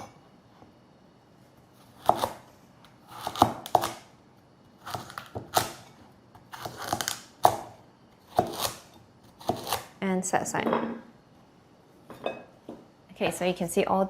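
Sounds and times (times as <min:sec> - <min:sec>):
knife cutting cucumber on board: 0:01.8 - 0:04.1, 0:04.8 - 0:10.0.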